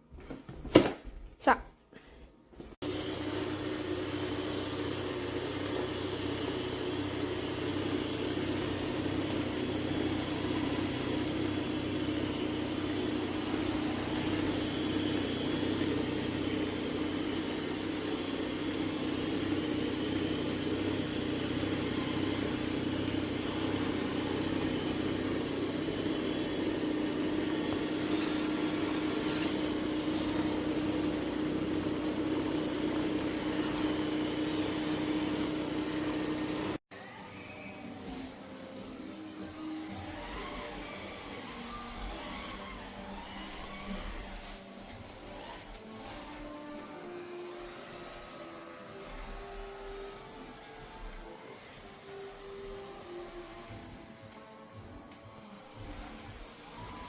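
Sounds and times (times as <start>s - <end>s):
base station motor hum: 2.6s - 57.0s.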